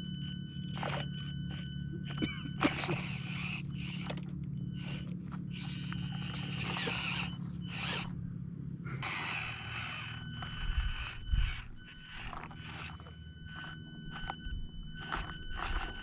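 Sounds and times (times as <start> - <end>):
small electric motor whining: 0.0 - 8.3, 8.9 - 16.0
tyres scraping on rock: 9.0 - 14.4.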